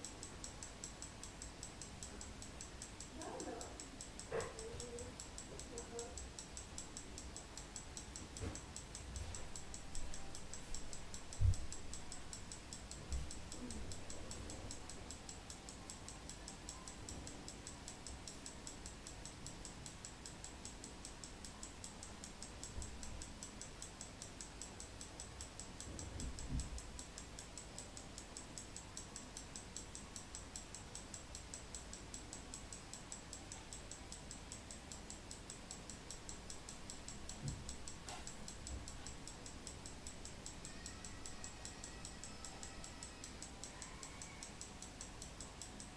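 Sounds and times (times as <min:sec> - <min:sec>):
alarm clock ticking: 0:00.0 - 0:45.9.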